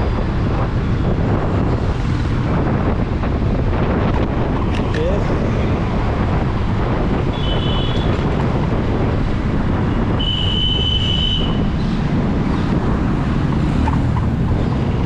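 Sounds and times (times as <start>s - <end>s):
road noise: 0.0s - 15.0s
wind buffeting microphone: 0.0s - 15.0s
scooter horn honks: 7.3s - 8.2s, 10.2s - 11.6s.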